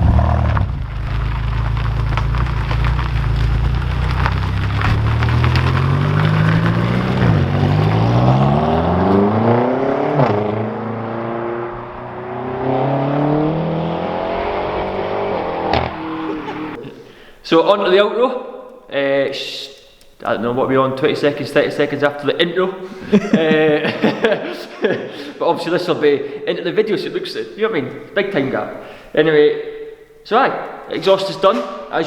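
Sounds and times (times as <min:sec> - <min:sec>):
car engine accelerating hard: 0:00.0 - 0:16.8.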